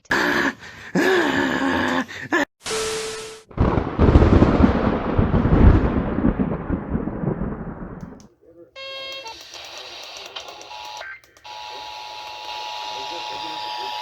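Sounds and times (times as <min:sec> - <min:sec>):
thunder crack and rumble: 0:03.5 - 0:08.2.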